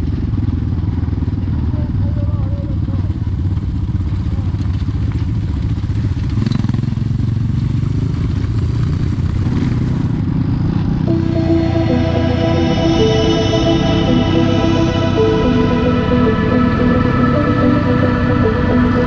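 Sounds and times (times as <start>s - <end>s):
music: 11.1s - 19.0s.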